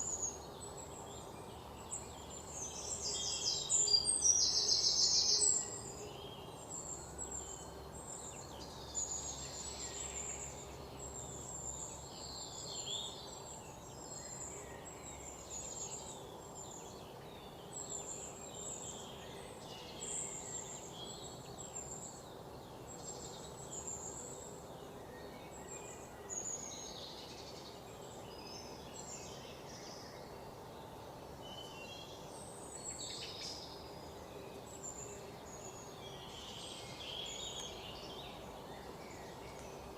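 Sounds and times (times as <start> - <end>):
faint background hiss: 0.0 - 39.9
small birds chirping: 0.0 - 39.9.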